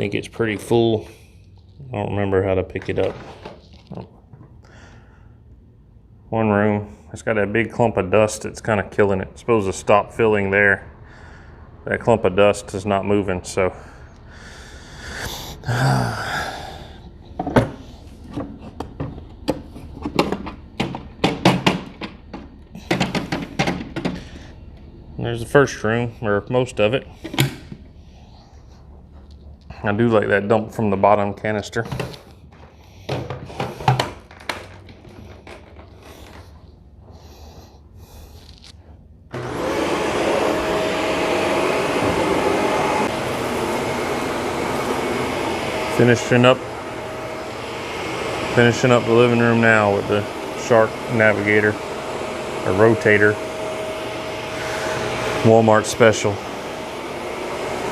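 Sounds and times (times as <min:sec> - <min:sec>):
vacuum cleaner whine: 0:06.8 - 0:28.0, 0:33.1 - 0:38.7, 0:39.3 - 0:57.9.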